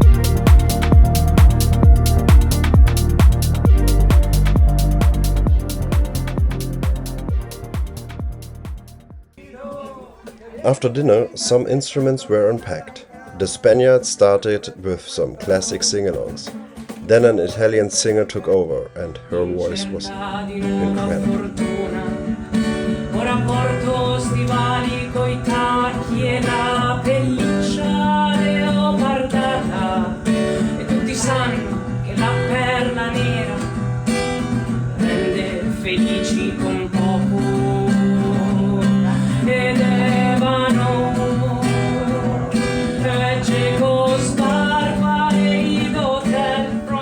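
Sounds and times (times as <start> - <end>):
strummed acoustic guitar: 0.0 - 9.4, 15.3 - 18.4, 19.1 - 47.0
woman singing: 18.2 - 33.8, 35.0 - 47.0.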